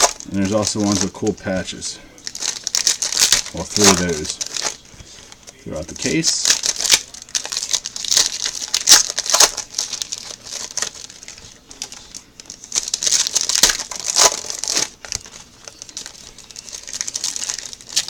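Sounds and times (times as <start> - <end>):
plastic packaging crinkling and tearing: 0.0 - 18.0.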